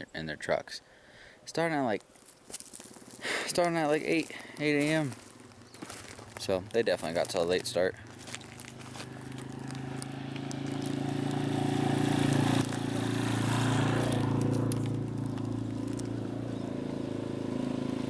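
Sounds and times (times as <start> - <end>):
truck driving past: 5.3 - 18.0.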